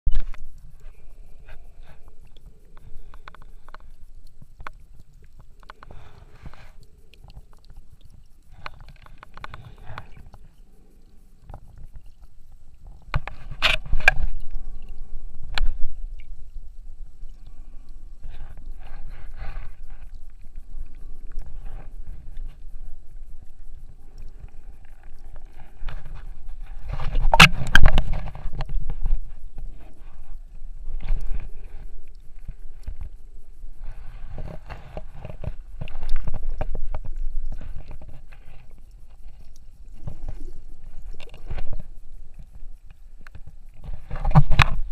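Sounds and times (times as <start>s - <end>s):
sea water sloshing and gurgling: 0.2s - 44.9s.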